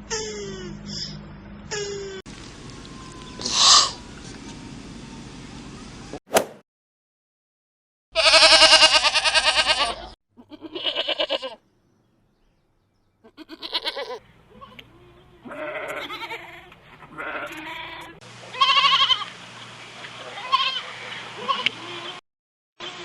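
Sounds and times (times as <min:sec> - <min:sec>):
goat bleating: 0:08.2 - 0:11.6, 0:13.2 - 0:19.3, 0:20.3 - 0:22.2.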